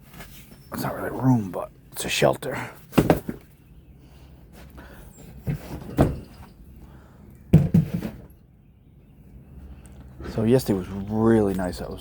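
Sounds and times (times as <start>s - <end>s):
dull knocks of objects set down: 2.9s - 3.5s, 7.5s - 8.3s.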